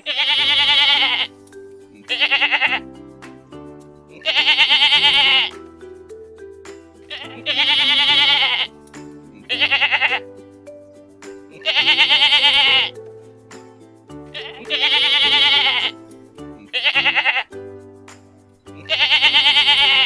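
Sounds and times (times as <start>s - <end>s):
farm animal bleating: 0.0s - 1.3s, 2.1s - 2.8s, 4.2s - 5.5s, 7.2s - 8.7s, 9.5s - 10.2s, 11.6s - 12.9s, 14.4s - 15.9s, 16.7s - 17.5s, 18.8s - 20.0s
background music sustained notes: 0.0s - 20.0s.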